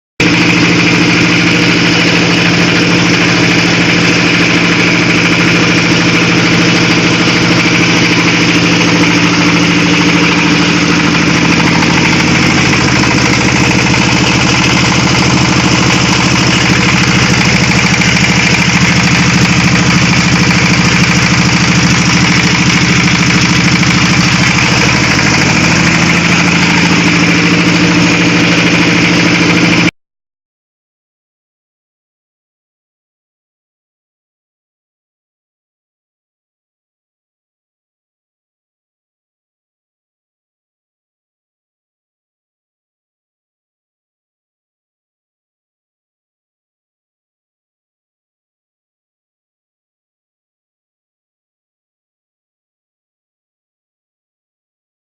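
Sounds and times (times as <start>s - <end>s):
extruder machine mechanical drone: 0.2s - 29.9s.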